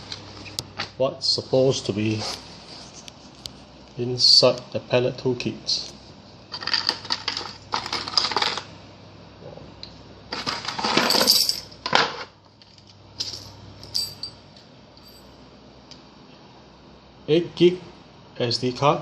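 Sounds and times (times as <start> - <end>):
small parts rattling and clicking: 6.5 - 8.7.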